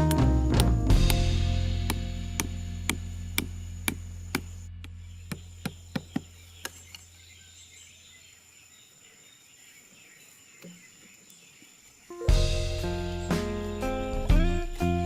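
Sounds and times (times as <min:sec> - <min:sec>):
music with plucked notes: 0:00.0 - 0:03.1, 0:12.1 - 0:15.0
faint outdoor ambience: 0:00.0 - 0:15.0.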